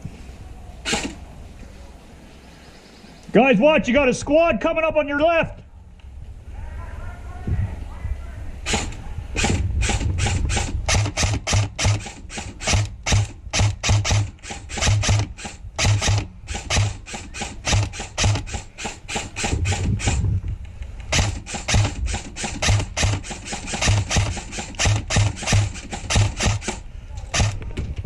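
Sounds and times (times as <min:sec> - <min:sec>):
airsoft rifle single shots: 0:00.8 - 0:01.2.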